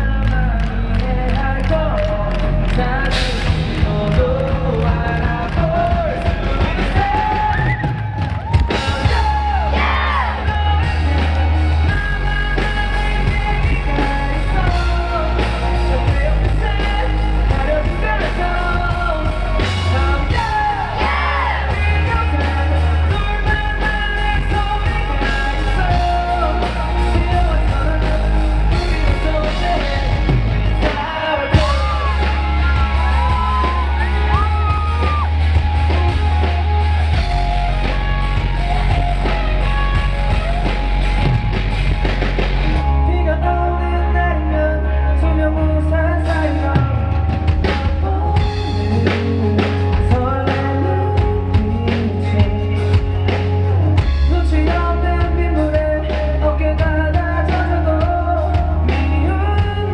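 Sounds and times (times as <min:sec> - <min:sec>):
heavy bass line: 0:00.0 - 0:59.9
live rock band playing: 0:00.0 - 0:59.9.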